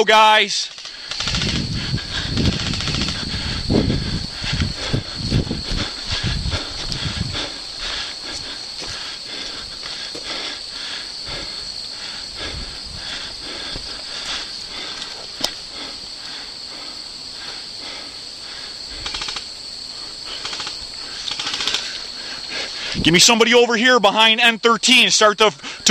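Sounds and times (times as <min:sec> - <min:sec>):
crickets chirring: 0:00.0 - 0:25.9
low thumps of movement: 0:01.3 - 0:07.6.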